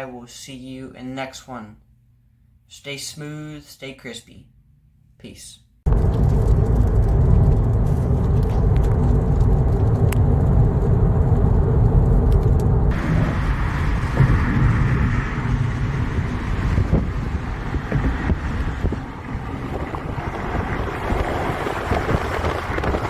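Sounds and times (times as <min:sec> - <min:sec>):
car engine and road rumble: 0:05.9 - 0:23.0
wind buffeting microphone: 0:05.9 - 0:23.0.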